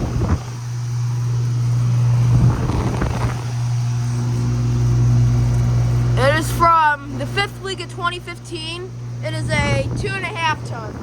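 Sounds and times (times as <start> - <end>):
air conditioner low hum: 0.0 - 11.0
higher hum tone: 0.0 - 11.0.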